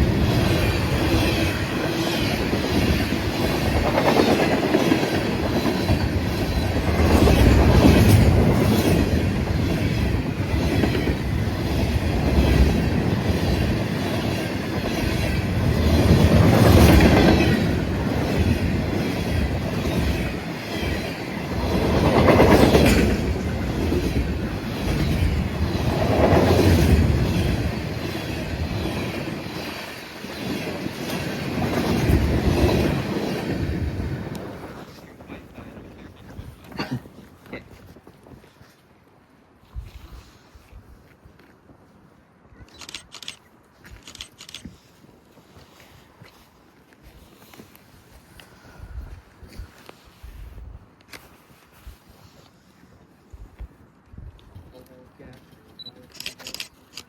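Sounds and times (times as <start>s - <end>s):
freight train rumbling past: 0.0s - 36.0s.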